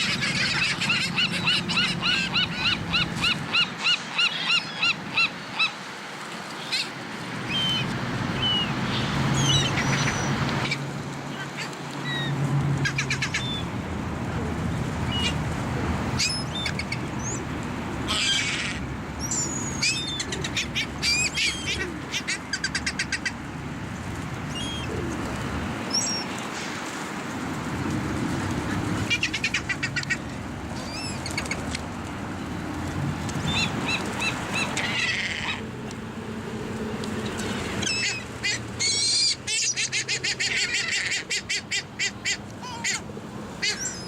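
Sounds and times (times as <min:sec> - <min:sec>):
birds chirping and calling: 0:00.0 - 0:05.8, 0:06.6 - 0:10.8, 0:16.1 - 0:23.4, 0:24.5 - 0:25.1, 0:29.0 - 0:31.8, 0:33.3 - 0:35.7, 0:37.1 - 0:44.0.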